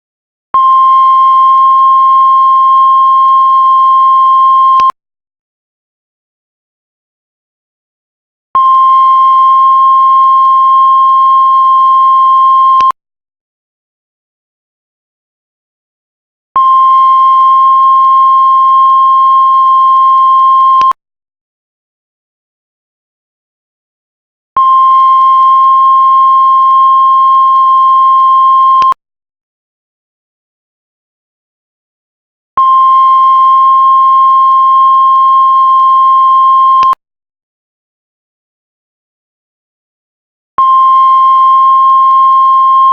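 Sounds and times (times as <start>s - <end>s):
heart monitor flatline beep: 0.6s - 5.0s, 8.6s - 13.0s, 16.6s - 21.0s, 24.6s - 29.0s, 32.6s - 37.0s, 40.6s - 42.9s.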